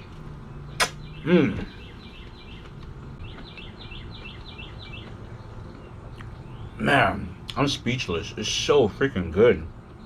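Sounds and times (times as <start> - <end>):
outdoor background noise: 0.0 - 10.0
songbird chirping: 0.0 - 10.0
man humming mm: 1.2 - 1.7.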